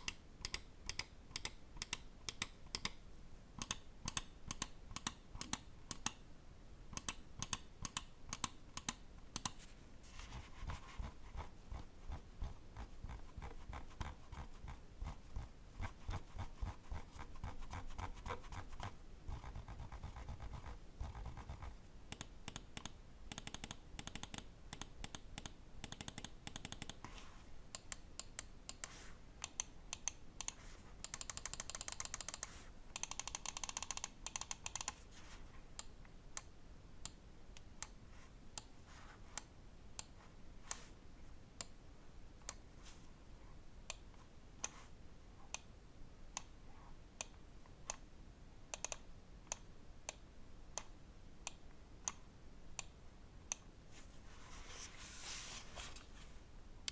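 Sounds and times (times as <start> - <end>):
mouse scroll-wheel ticks: 0.0 - 3.0, 3.6 - 6.2, 7.0 - 9.6, 15.8 - 27.0, 27.7 - 35.0, 48.7 - 50.2.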